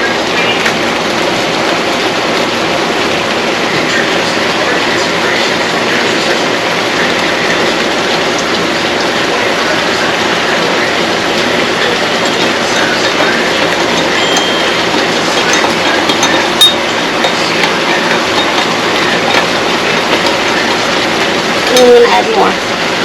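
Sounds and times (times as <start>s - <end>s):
food sizzling in pan: 0.4s - 23.0s
utensil clinks: 12.1s - 20.8s.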